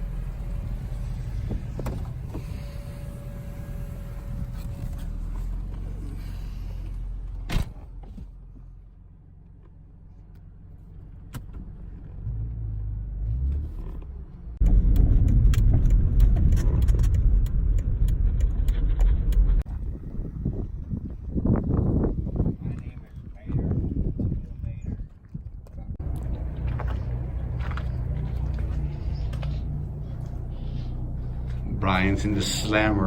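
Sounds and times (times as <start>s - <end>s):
car engine and road rumble: 0.0s - 33.0s
rough crackling noise: 14.6s - 19.7s.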